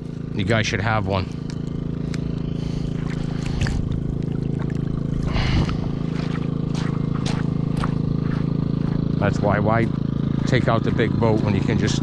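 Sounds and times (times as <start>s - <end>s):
low mechanical hum: 0.0s - 12.0s
water splashing and trickling: 2.6s - 9.0s.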